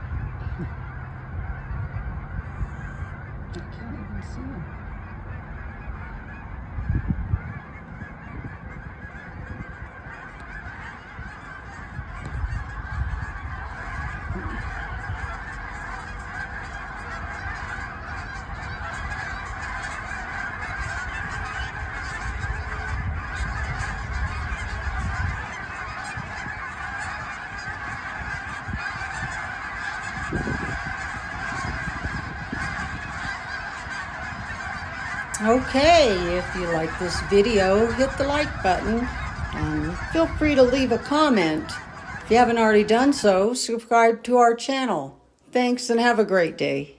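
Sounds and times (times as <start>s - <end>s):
wind rumbling on microphone: 0.0s - 43.4s
geese honking: 0.0s - 45.0s.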